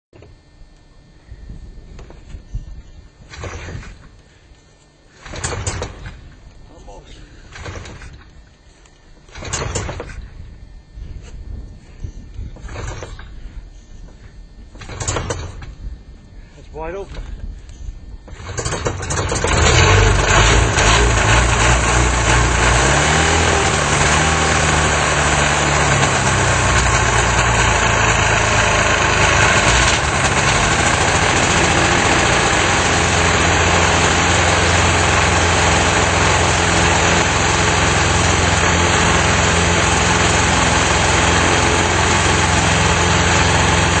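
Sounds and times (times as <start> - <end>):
light aircraft engine running: 0.2 - 44.0.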